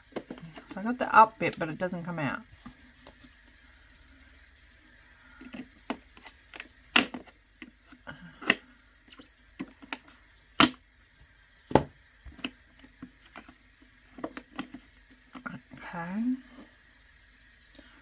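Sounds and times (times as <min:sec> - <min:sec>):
plastic packaging clicking and snapping: 0:05.9 - 0:07.8, 0:10.6 - 0:10.8.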